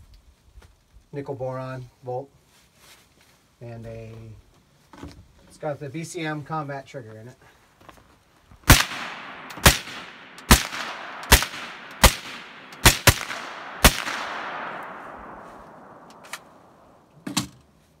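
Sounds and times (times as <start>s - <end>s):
suppressed gunshots with echo: 8.7s - 17.1s.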